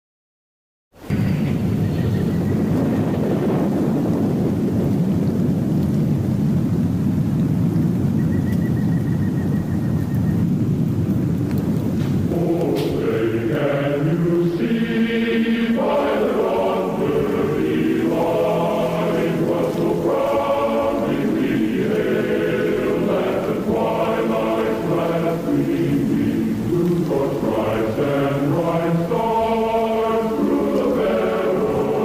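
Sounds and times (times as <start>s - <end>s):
low rumbling noise: 1.0s - 32.0s
choir singing held notes: 12.2s - 32.0s.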